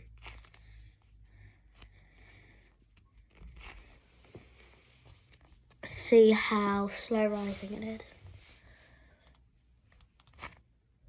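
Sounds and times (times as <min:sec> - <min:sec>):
foam toy rustling and scraping: 0:03.2 - 0:08.6.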